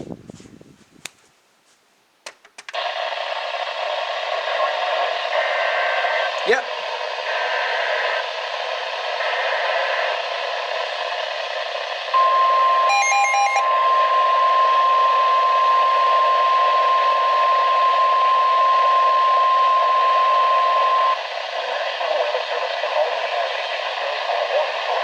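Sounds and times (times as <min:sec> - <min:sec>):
radio broadcast hiss: 0:02.7 - 0:12.2, 0:15.8 - 0:25.0
steady warning alarm tone: 0:12.1 - 0:21.2.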